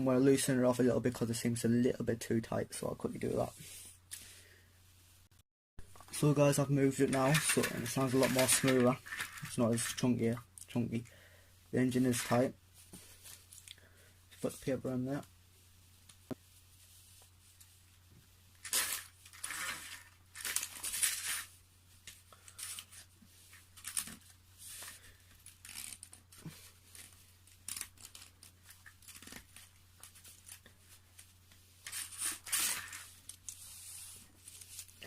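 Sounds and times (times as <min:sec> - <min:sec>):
small clicks and rustles: 0:18.6 - 0:35.0
paper crackling and tearing in gears: 0:25.4 - 0:30.7, 0:31.8 - 0:33.7.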